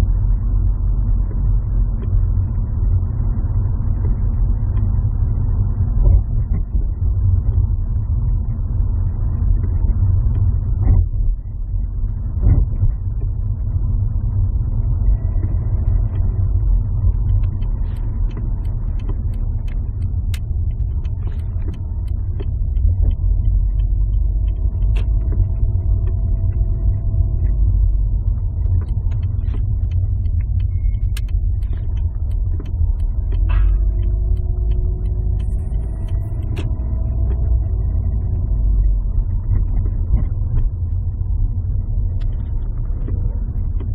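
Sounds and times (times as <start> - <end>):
low car rumble: 0.0 - 43.9.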